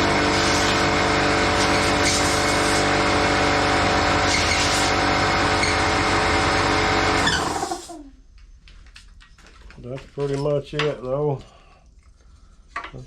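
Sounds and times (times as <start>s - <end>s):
air blower running: 0.0s - 8.1s.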